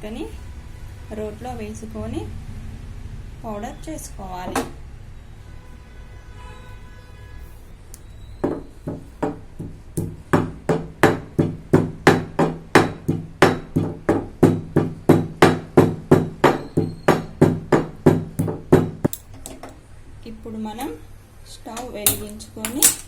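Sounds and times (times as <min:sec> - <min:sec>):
pestle pounding in stone mortar: 0:08.9 - 0:19.2.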